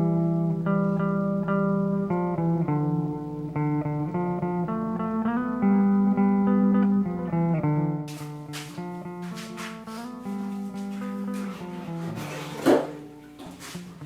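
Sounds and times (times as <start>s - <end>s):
plucked and strummed guitar music: 0.0s - 14.0s.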